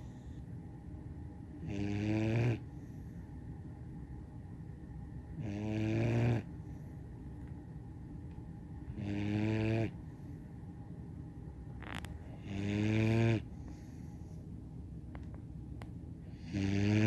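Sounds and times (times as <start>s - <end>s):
puppy snoring: 1.6s - 3.2s, 5.4s - 6.8s, 8.9s - 10.1s, 11.8s - 14.3s, 16.3s - 17.0s.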